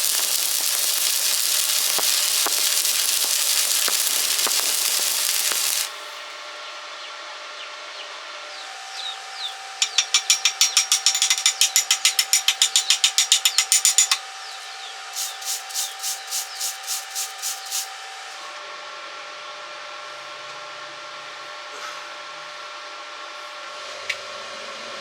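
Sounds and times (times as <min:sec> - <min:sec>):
hand tool scraping metal: 0:09.8 - 0:18.4.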